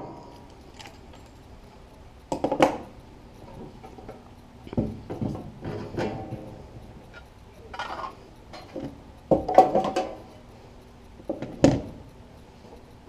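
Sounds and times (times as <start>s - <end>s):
metal tools clanking: 0.0s - 1.5s, 2.3s - 10.4s.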